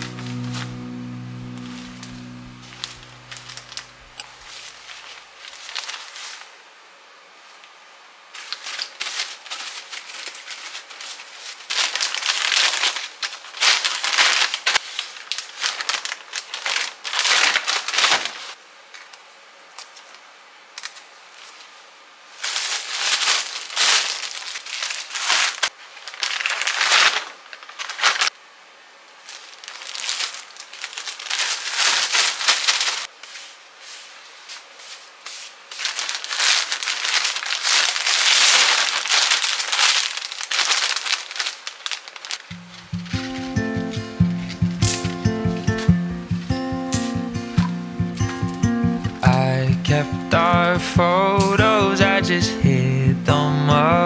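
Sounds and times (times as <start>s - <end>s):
plastic bags crinkling: 3.2s - 6.5s, 8.4s - 18.6s, 22.3s - 28.4s, 29.2s - 45.8s.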